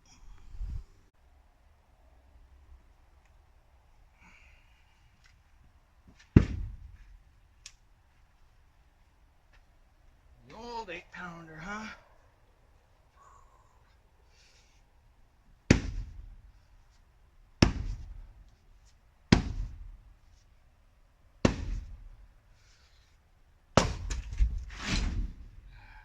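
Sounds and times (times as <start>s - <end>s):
wood splitting knocks: 6.2s - 7.0s, 23.8s - 25.3s
splitting maul striking wood: 6.3s - 7.0s, 15.7s - 16.2s, 17.6s - 18.2s, 19.3s - 19.9s, 21.4s - 22.1s, 23.8s - 25.5s.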